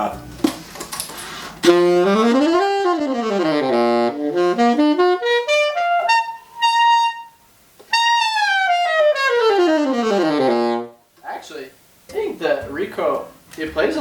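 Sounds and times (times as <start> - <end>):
saxophone playing: 1.6 - 11.0.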